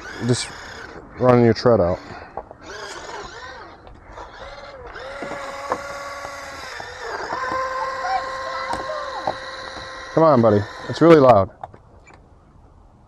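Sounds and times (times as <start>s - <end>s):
toy vehicle electric motor whining: 0.0s - 1.0s, 1.8s - 11.4s.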